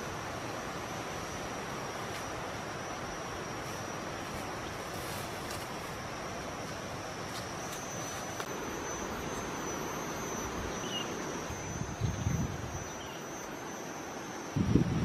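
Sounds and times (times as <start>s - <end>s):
high-pitched whine: 0.0s - 15.0s
wind hiss: 0.0s - 15.0s
faint chirps: 7.3s - 14.6s.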